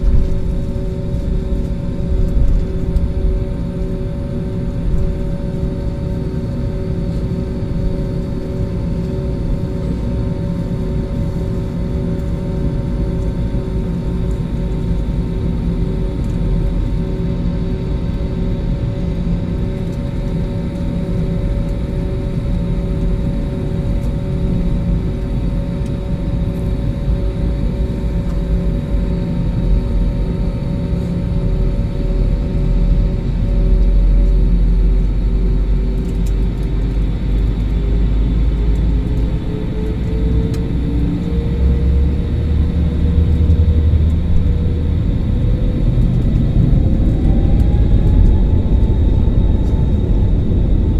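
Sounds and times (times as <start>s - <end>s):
jet engines rumbling: 0.0s - 50.9s
rising engine whine: 19.8s - 50.9s.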